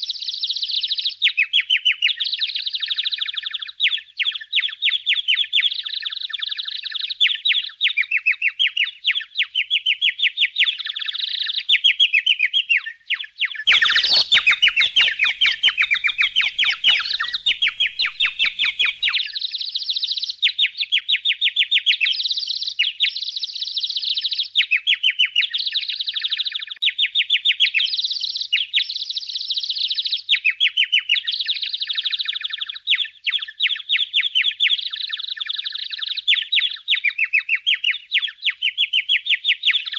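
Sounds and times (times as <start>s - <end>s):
budgerigars chirping: 13.7s - 19.4s.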